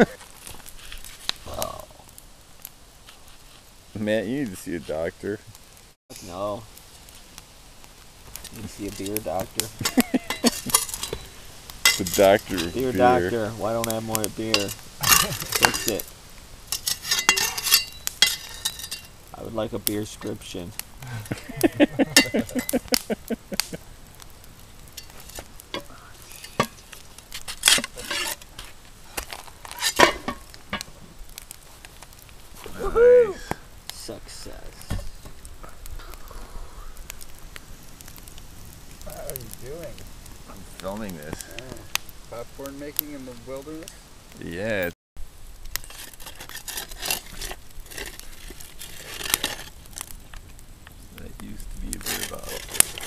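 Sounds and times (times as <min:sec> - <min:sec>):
popcorn popping and crackling: 0:00.0 - 0:02.1, 0:06.1 - 0:44.8, 0:45.6 - 0:53.0
pot rustling and shaking: 0:08.4 - 0:16.1, 0:20.0 - 0:23.8, 0:24.9 - 0:30.8
rasping from pot: 0:10.3 - 0:12.9, 0:16.7 - 0:19.1, 0:25.0 - 0:28.7, 0:45.8 - 0:49.8, 0:52.0 - 0:53.0.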